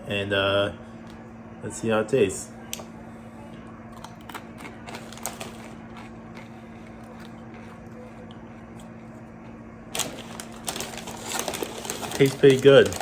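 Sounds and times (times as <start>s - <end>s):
low electrical hum: 0.0s - 13.0s
person crunching chip: 3.9s - 6.5s.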